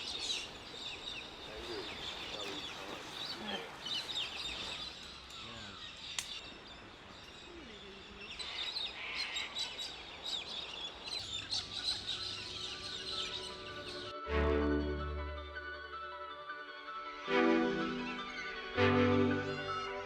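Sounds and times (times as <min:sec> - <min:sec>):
lower bird calls: 0:00.0 - 0:14.2
small birds chirping and trilling: 0:00.0 - 0:14.2.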